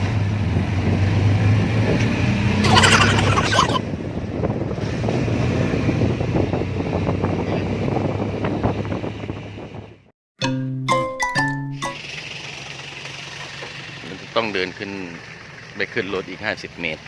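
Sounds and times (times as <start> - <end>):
loud rush of noise: 2.6 - 3.9
three-wheeler engine running: 11.8 - 17.0.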